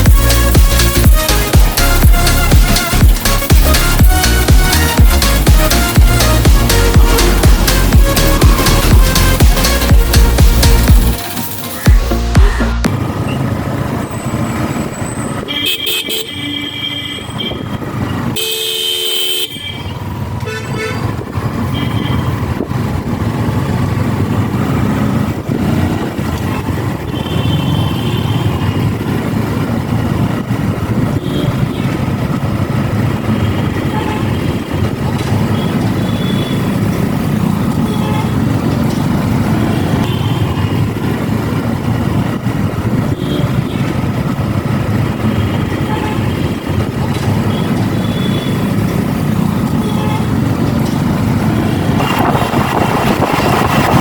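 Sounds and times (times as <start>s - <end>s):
traffic and engine noise: 0.0s - 54.0s
vehicle horns honking: 14.2s - 22.5s, 27.0s - 28.9s, 31.2s - 32.2s, 33.3s - 34.7s, 35.4s - 38.6s, 39.5s - 41.1s, 43.0s - 44.2s, 45.2s - 50.6s.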